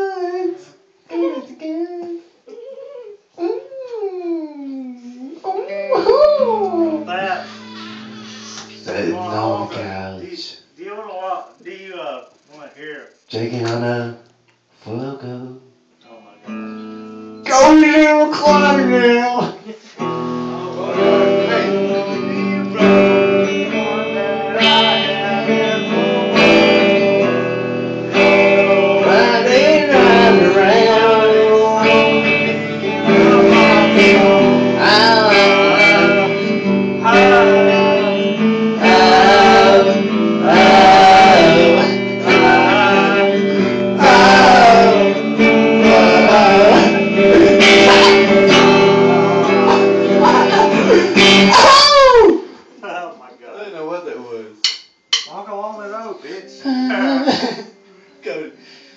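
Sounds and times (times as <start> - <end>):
man singing: 0.0 - 2.2, 14.8 - 15.7, 17.4 - 19.7, 20.4 - 27.4, 28.1 - 52.4
guitar strumming: 6.4 - 10.0, 16.5 - 19.3, 20.0 - 51.8.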